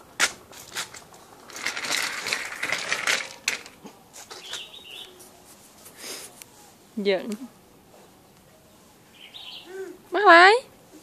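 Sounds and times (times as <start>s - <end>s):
crunching movement over rough ground: 0.0s - 5.1s
faint high chirp: 4.4s - 5.3s, 8.0s - 10.0s.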